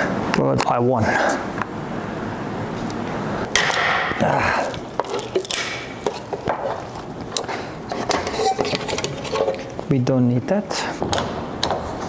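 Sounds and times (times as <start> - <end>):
sharp knocks and clicks: 11.0 - 12.0.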